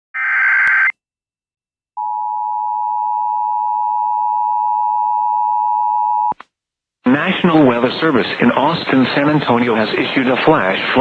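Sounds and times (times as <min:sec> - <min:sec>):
loud steady high alert tone: 0:00.2 - 0:00.9.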